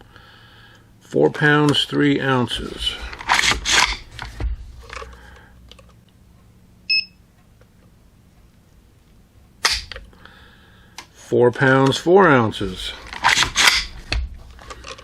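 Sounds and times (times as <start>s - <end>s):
gauge beep: 6.9s - 7.2s.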